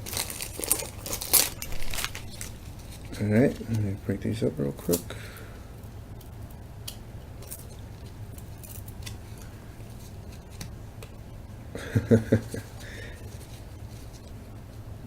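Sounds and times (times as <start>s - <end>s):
card handling sounds: 0.0s - 4.0s.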